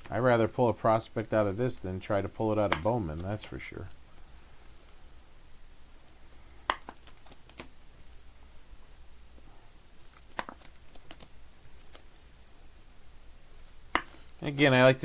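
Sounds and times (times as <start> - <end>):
faint steady hiss: 0.0 - 15.0
trading cards clicking and tapping: 2.5 - 4.0, 6.3 - 7.7, 10.2 - 12.0.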